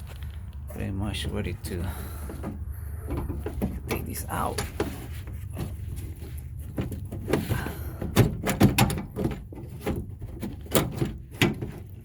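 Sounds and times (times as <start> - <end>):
knocks and clunks in car door: 6.8 - 11.8.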